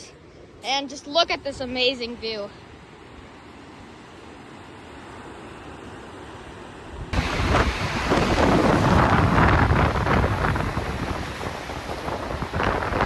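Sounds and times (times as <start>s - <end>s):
outdoor air noise: 0.0s - 13.0s
wind buffeting microphone: 6.9s - 13.0s.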